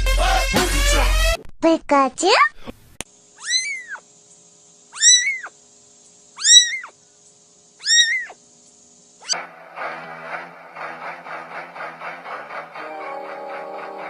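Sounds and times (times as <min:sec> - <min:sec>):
kitten meowing: 0:03.4 - 0:04.0, 0:05.0 - 0:05.5, 0:06.4 - 0:06.9, 0:07.8 - 0:08.4.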